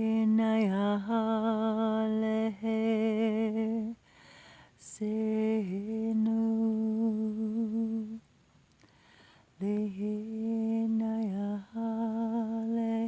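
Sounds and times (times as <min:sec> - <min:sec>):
breath: 0:04.0 - 0:04.8, 0:08.8 - 0:09.6.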